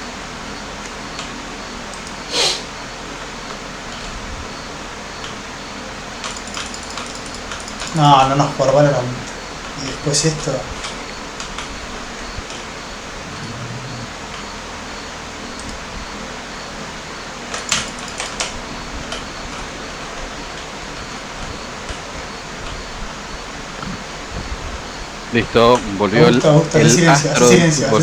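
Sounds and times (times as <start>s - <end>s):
hiss-like background noise: 0.0s - 28.0s
sharp clicks: 0.8s - 2.7s, 6.2s - 8.4s, 15.5s - 15.9s, 17.5s - 23.2s.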